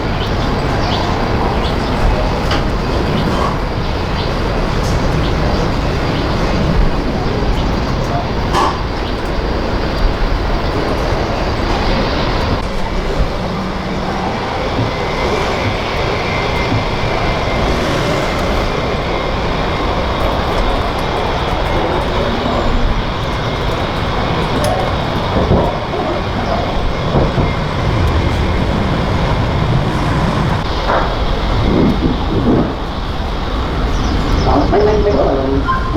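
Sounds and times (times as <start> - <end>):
jet engines running: 0.0 - 35.9.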